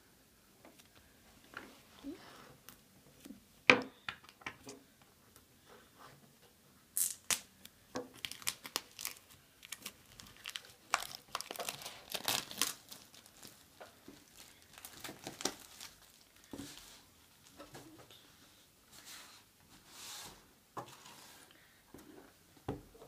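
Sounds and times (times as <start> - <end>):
paper and plastic crinkling: 8.1 - 17.7.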